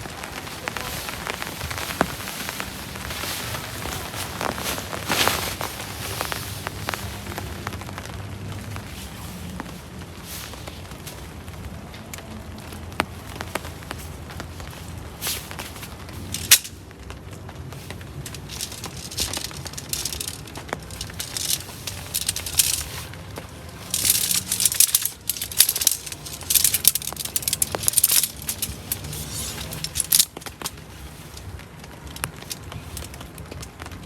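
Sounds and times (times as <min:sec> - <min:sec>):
rustling and crackling: 0:00.0 - 0:34.0.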